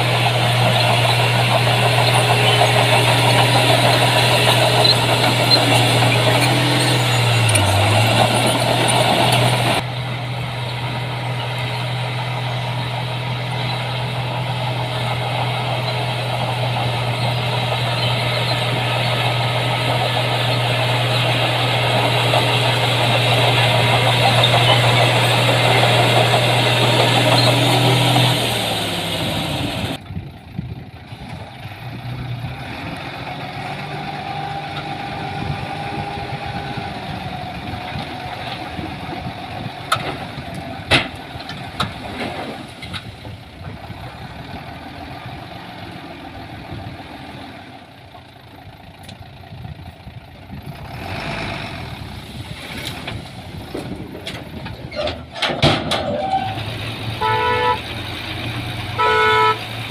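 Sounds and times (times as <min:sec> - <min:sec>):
heavy diesel machinery running: 0:00.0 - 0:59.9.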